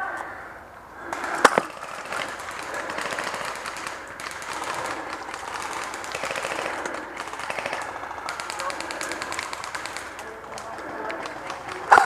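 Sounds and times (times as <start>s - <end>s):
airsoft guns firing bursts: 1.1s - 12.0s.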